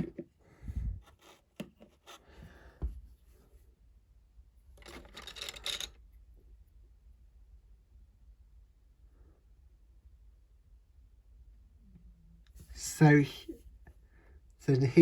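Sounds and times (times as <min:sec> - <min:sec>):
plastic toy bricks clicking: 0:04.8 - 0:06.0.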